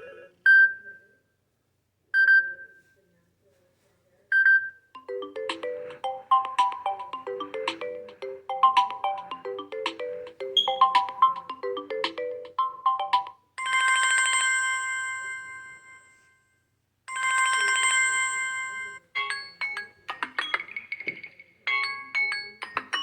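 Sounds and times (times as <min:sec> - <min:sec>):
melody of bright notes: 0:05.0 - 0:13.4
phone ringtone melody: 0:05.0 - 0:16.1, 0:17.1 - 0:21.0
bell-like chime ringing: 0:05.0 - 0:16.3.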